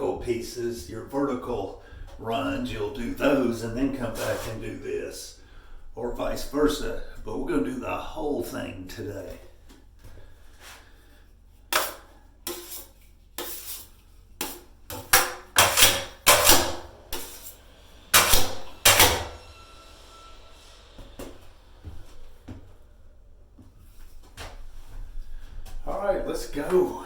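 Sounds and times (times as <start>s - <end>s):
drywall knife scraping metal container: 4.0s - 4.7s, 11.7s - 19.5s.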